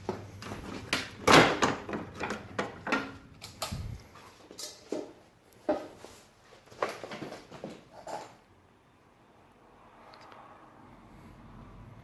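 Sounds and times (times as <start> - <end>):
plastic parts clicking and knocking: 0.0 - 3.9.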